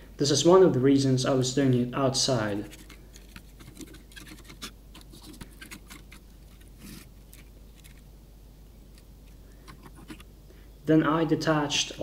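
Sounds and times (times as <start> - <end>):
scratchy rub: 2.5 - 8.0, 9.6 - 10.2.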